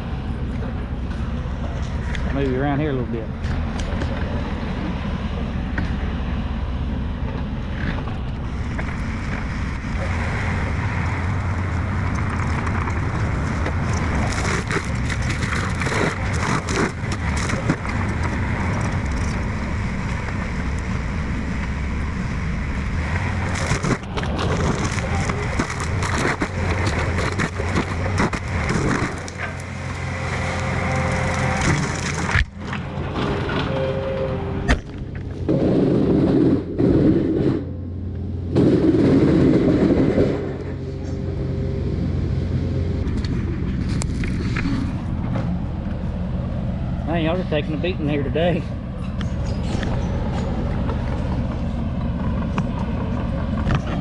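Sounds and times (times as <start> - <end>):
diesel engine under load: 0.0 - 54.0
wood cracking and splintering: 7.8 - 33.8, 43.0 - 45.6.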